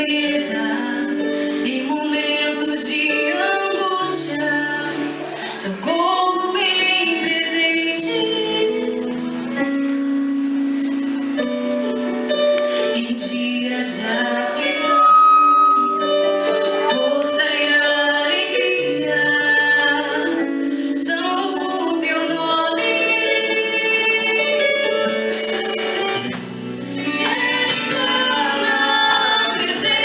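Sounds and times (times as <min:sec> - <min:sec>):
woman singing: 0:00.0 - 0:09.3, 0:12.8 - 0:24.8, 0:27.0 - 0:30.0
instrumental accompaniment: 0:23.8 - 0:30.0.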